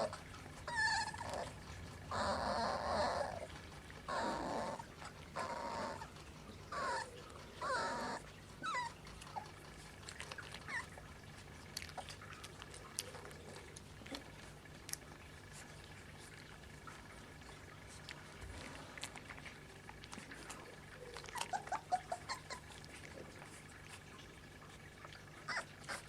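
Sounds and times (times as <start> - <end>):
puppies yelping: 0.0 - 14.2, 19.2 - 23.9, 25.0 - 26.0
puppies whining: 0.0 - 26.0
small clicks and ticks: 8.2 - 23.1.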